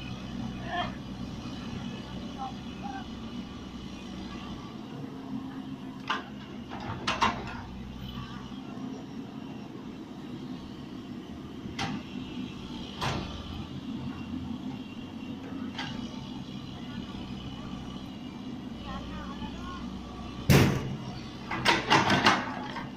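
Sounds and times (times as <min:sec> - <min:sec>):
excavator diesel engine running: 0:00.0 - 0:22.9.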